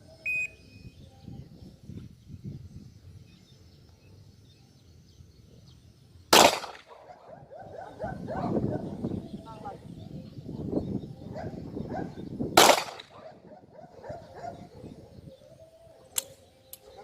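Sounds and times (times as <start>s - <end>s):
shot timer beep: 0.3s - 0.6s
handgun shot: 6.3s - 6.9s, 12.6s - 13.2s.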